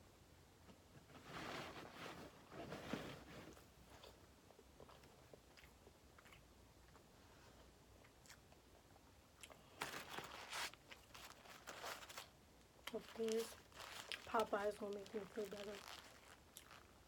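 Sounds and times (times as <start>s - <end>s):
person chewing: 4.8s - 7.0s, 8.0s - 8.6s, 9.4s - 9.9s, 16.0s - 17.0s.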